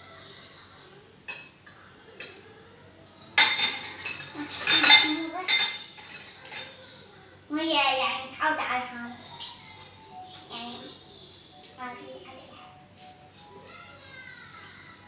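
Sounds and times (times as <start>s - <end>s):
cutlery clinking on dishes: 1.3s - 2.6s, 3.2s - 7.0s.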